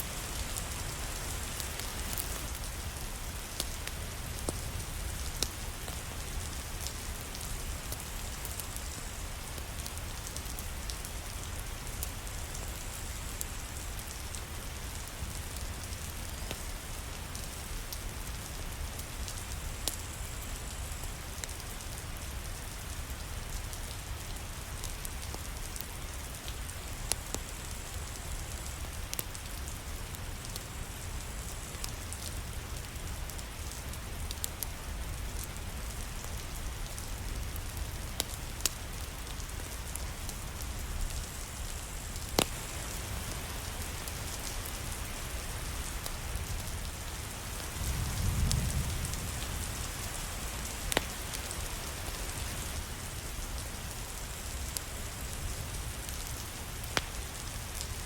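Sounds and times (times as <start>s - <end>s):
steady rain hiss: 0.0s - 58.0s
sharp ticks and pops: 42.1s - 42.6s, 50.8s - 51.5s.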